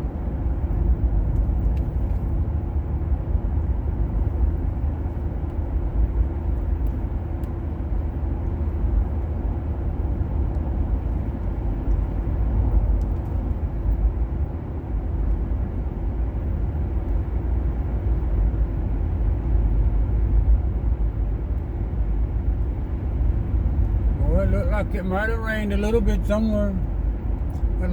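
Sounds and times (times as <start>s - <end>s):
car driving on road: 0.0s - 27.9s.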